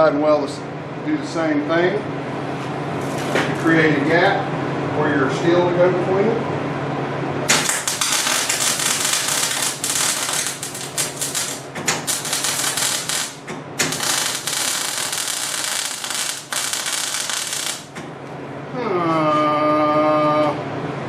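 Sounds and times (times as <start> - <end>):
electric arc welding crackle: 7.5 - 18.1.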